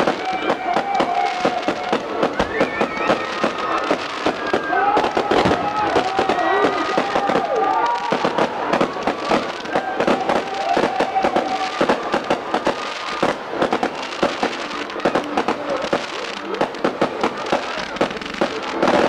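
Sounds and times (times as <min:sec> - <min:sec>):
fireworks bangs and crackles: 0:00.0 - 0:19.0.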